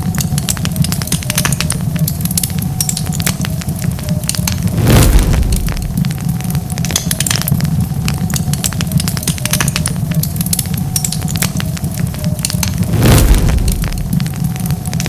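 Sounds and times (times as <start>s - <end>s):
wood fire crackling: 0.0s - 15.0s
low rumble: 4.4s - 6.8s, 12.6s - 15.0s
rushing burst: 4.6s - 6.2s, 12.8s - 14.5s.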